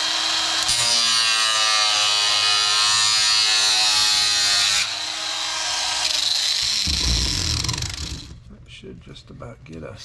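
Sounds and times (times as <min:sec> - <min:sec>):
angle grinder motor: 0:00.0 - 0:08.4
grinder disc cutting plastic: 0:06.0 - 0:08.4.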